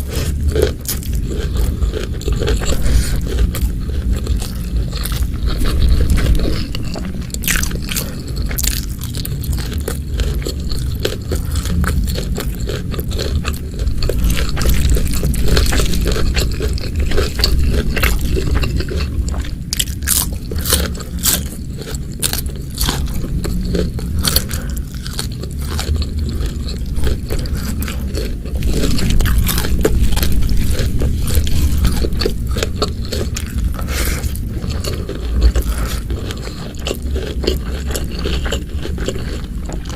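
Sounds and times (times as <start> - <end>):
chewing and crunching food: 0.0 - 39.9.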